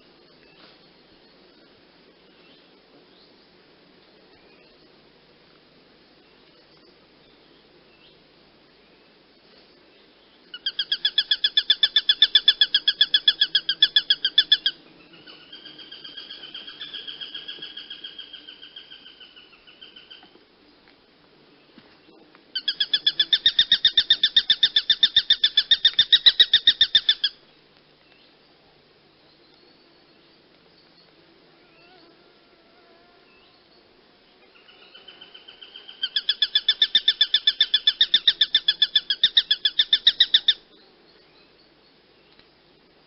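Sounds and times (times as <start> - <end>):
hawk chattering call: 10.5 - 20.2, 22.6 - 27.4, 35.0 - 40.6.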